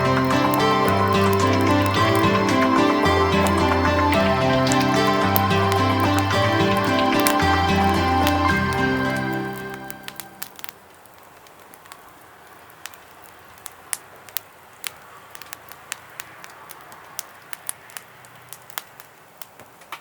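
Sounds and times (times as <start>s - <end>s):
background music: 0.0s - 10.7s
pellet fire crackling and popping: 0.0s - 20.0s.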